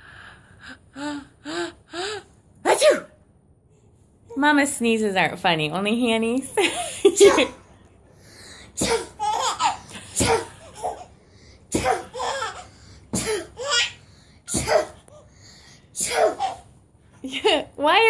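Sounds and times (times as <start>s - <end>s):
girl fake sneezing: 2.7s - 3.2s, 14.5s - 15.0s, 16.0s - 16.6s
baby laughing: 8.9s - 11.2s, 11.8s - 12.7s, 13.4s - 14.0s, 16.2s - 16.7s.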